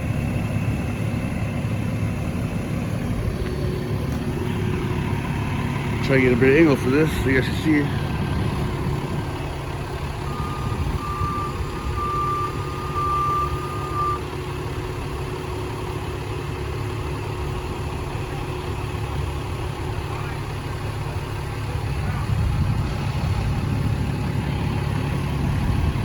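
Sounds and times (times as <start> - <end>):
heavy truck engine running: 0.0 - 26.0
backup alarm beeping: 10.2 - 14.2.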